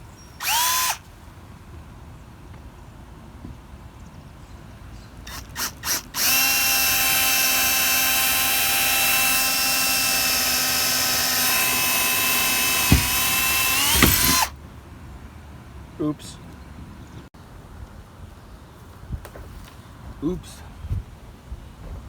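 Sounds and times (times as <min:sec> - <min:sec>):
electric drill whining: 0:00.4 - 0:01.0, 0:05.3 - 0:14.5
sharp knocks: 0:11.2 - 0:14.5.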